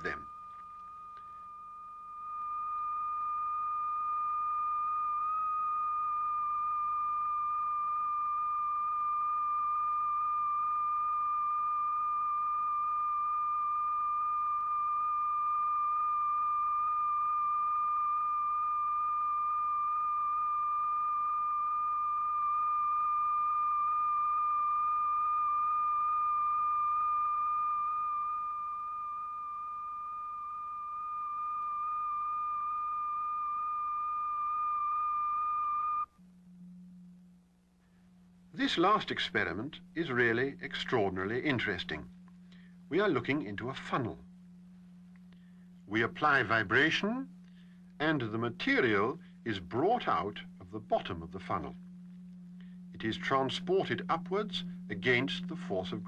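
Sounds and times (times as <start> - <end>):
high-pitched pure tone: 0.0 - 56.0.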